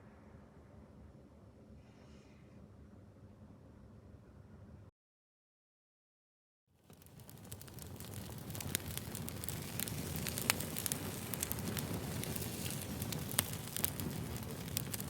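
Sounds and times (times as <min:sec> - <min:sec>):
sharp pops and crackles: 0:06.8 - 0:15.0.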